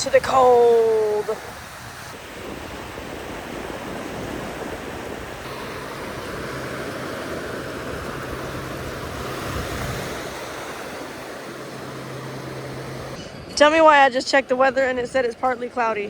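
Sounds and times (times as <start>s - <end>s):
ocean surf washing onto beach: 0.0s - 13.2s.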